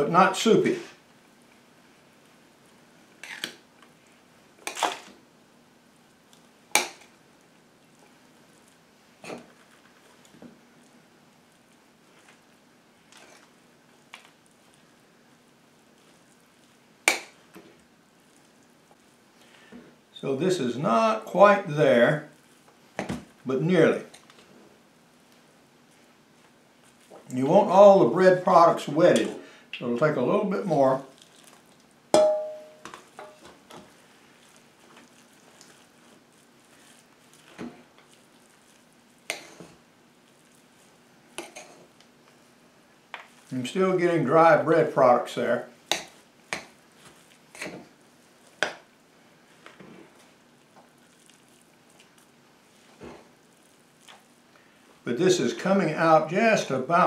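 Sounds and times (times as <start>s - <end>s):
spoon knocking and scraping bowl: 32.2s - 33.5s.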